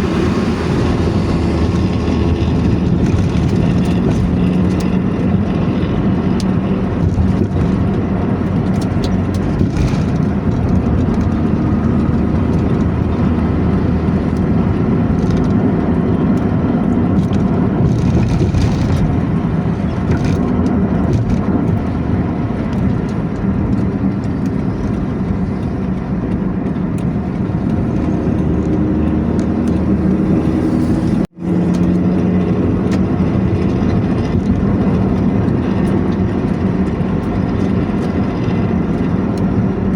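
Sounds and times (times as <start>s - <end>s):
bus engine droning: 0.0s - 39.9s
road noise: 0.0s - 39.9s.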